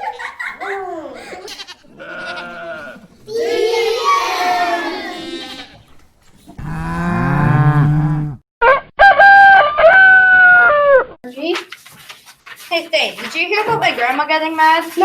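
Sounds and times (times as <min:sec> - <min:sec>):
wavering bleat: 0:01.5 - 0:03.1
cow mooing: 0:06.6 - 0:08.4
rooster crowing: 0:08.6 - 0:10.9.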